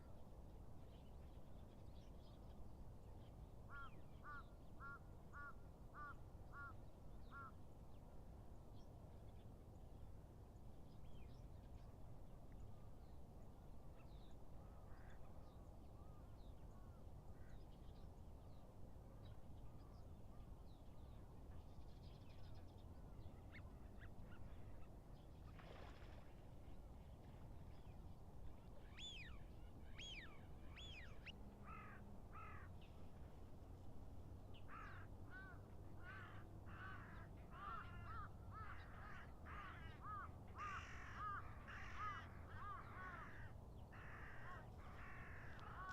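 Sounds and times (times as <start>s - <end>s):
distant bird calls: 28.8s - 32.8s, 34.6s - 45.9s.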